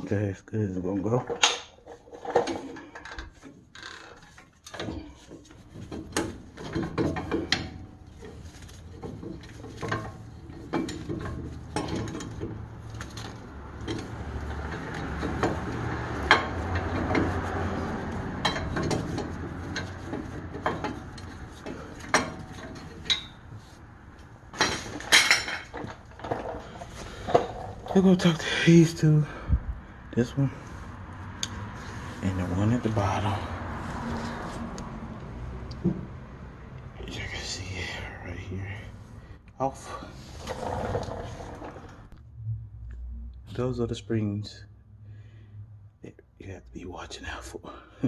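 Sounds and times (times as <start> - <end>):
hand tools clicking and knocking: 1.2 - 23.4.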